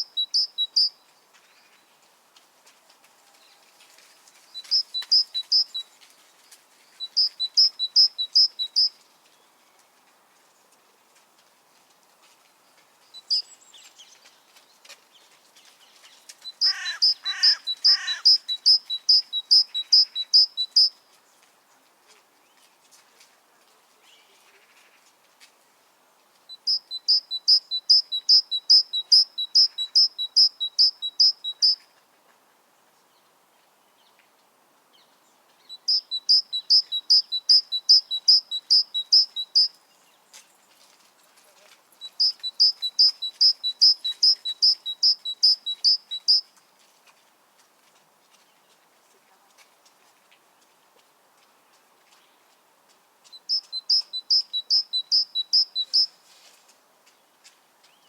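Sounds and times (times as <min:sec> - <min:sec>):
great tit singing: 0:00.0 - 0:01.0, 0:04.6 - 0:05.8, 0:07.0 - 0:08.9, 0:16.5 - 0:21.0, 0:26.5 - 0:31.8, 0:35.7 - 0:39.7, 0:42.0 - 0:46.5, 0:53.3 - 0:56.1.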